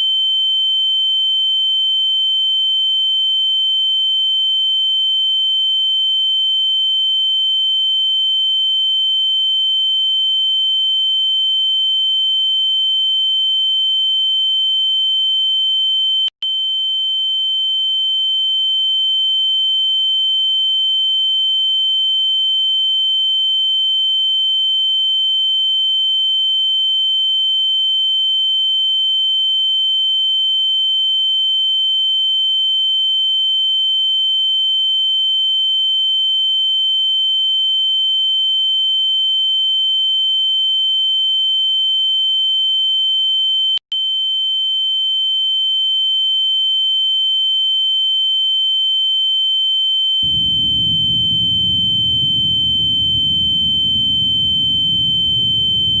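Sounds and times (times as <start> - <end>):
faint lower tone: 50.2 - 56.0
high-pitched sine tone: 50.2 - 56.0.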